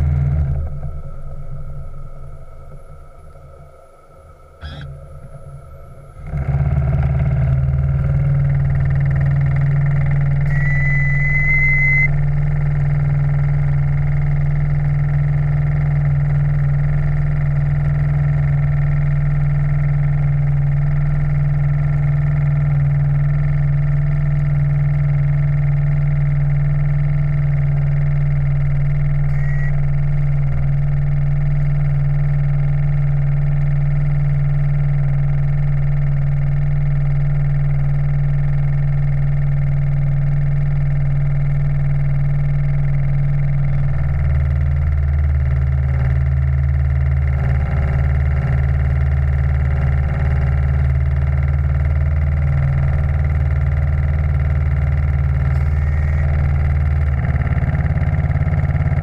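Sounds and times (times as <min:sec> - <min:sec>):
steam engine humming: 0:00.0 - 0:13.9
brief high tone: 0:02.1 - 0:06.5, 0:10.5 - 0:12.2, 0:29.3 - 0:29.8.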